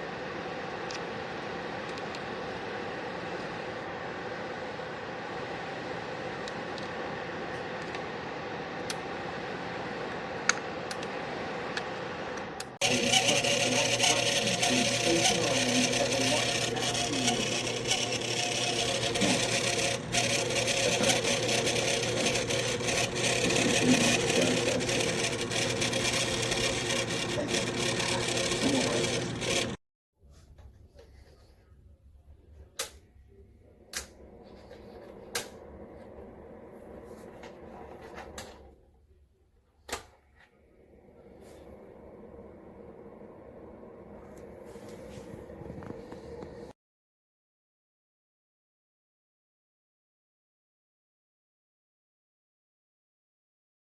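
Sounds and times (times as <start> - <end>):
heater fan humming and rattling: 0.0 - 29.8, 32.5 - 38.7.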